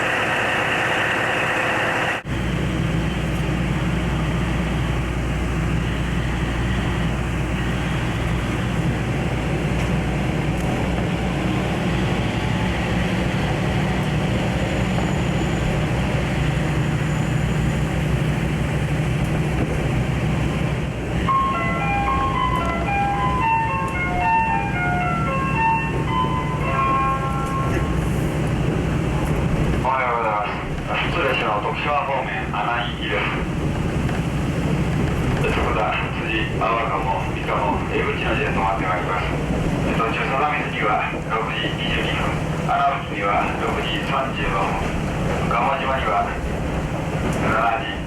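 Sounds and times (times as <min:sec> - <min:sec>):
railcar engine and wheels rumbling: 0:00.0 - 0:48.0
electronic chime melody: 0:21.3 - 0:27.8.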